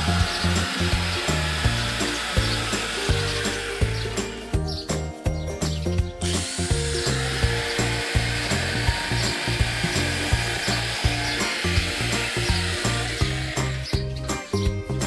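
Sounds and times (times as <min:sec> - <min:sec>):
power tool whirring: 0:00.0 - 0:04.6, 0:06.2 - 0:14.1
background music with beat: 0:00.0 - 0:15.0.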